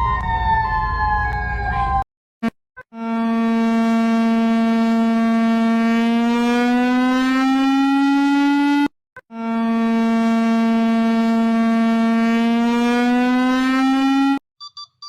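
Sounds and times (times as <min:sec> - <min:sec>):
buzzy alarm siren tone: 0:02.9 - 0:14.4.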